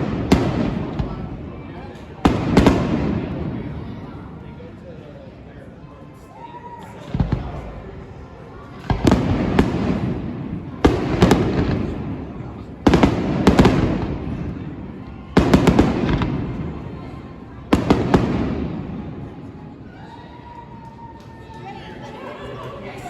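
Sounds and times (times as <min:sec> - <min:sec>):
fireworks bangs: 0:00.0 - 0:04.4, 0:07.0 - 0:19.8
fireworks crackling: 0:00.0 - 0:04.4, 0:07.1 - 0:19.7
rumbling echo: 0:00.0 - 0:04.7, 0:07.0 - 0:19.8.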